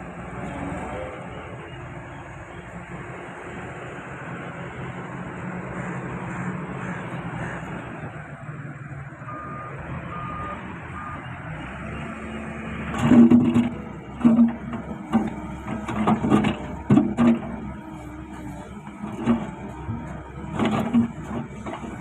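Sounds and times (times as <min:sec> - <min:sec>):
excavator diesel engine running: 0:00.0 - 0:22.0
backup alarm beeps: 0:09.3 - 0:12.2
machine clanking and rattling: 0:13.0 - 0:17.7, 0:18.5 - 0:22.0.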